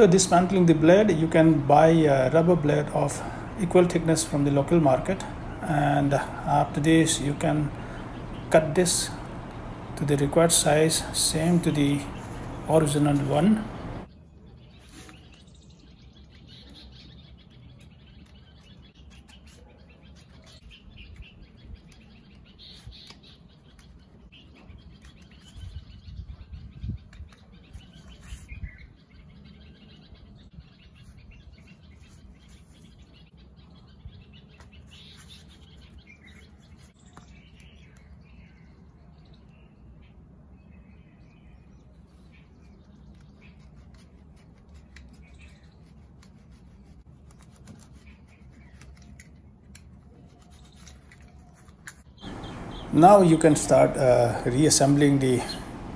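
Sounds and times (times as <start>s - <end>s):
birds chirping faintly: 0.0s - 55.9s.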